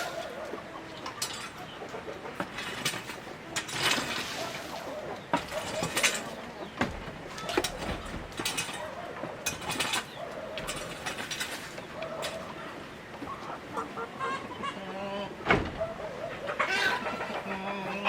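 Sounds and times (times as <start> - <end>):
chickens clucking: 0.0 - 18.0
handling clicks and rattles: 2.4 - 12.6.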